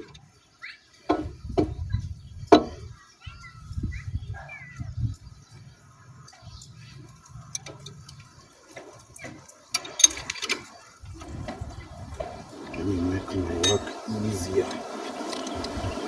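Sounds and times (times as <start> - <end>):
tools and parts clicking: 6.6 - 10.9
metallic clinks: 13.6 - 14.0.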